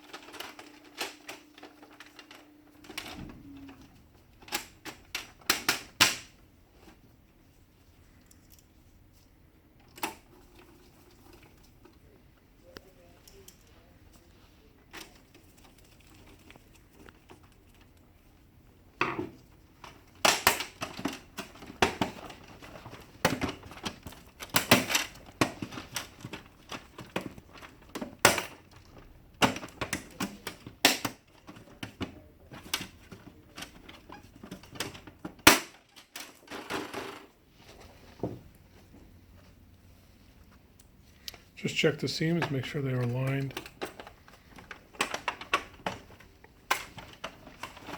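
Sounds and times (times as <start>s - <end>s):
plastic covers clicking into place: 4.3s - 6.4s, 19.0s - 37.3s, 42.4s - 47.9s
loud plastic snap: 4.5s - 6.3s, 20.2s - 21.2s, 29.4s - 31.2s, 35.4s - 35.8s.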